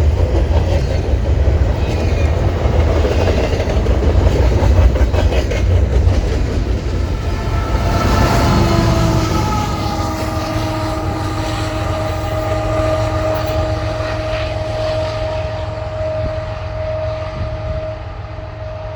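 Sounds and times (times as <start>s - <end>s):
freight train rumbling past: 0.0s - 18.9s
steady whine: 6.5s - 18.9s.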